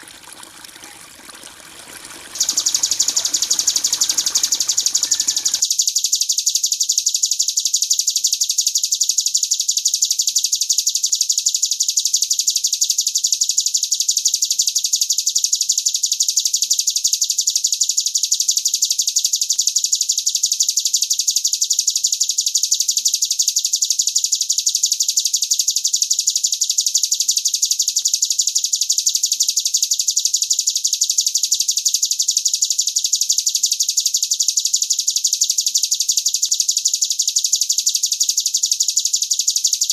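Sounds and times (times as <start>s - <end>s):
songbird fast high trill: 0.1s - 5.6s.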